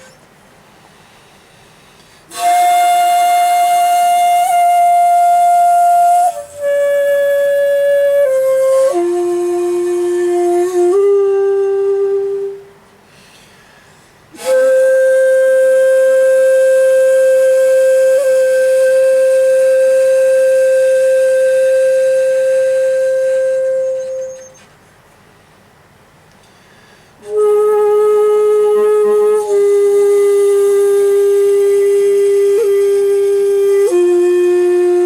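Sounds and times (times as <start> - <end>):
shakuhachi flute notes: 0.0 - 0.4, 1.7 - 13.4, 14.3 - 24.8, 27.1 - 35.0
breathy flute attack: 26.6 - 30.2.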